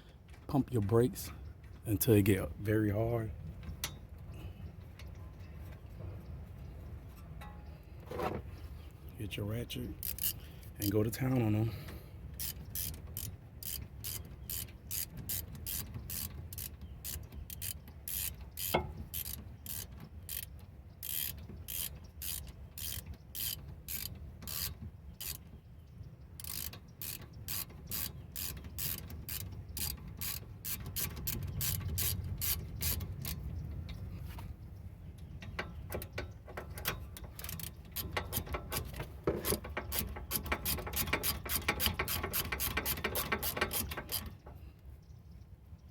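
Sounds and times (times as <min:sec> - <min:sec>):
ratchet wrench clicking: 0:09.9 - 0:11.0, 0:12.4 - 0:25.4, 0:26.4 - 0:33.5, 0:35.9 - 0:44.4.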